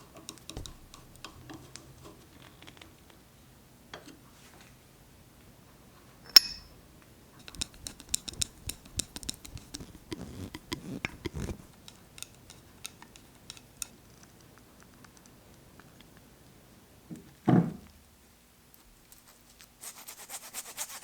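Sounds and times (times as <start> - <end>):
metallic clink: 6.3 - 6.7.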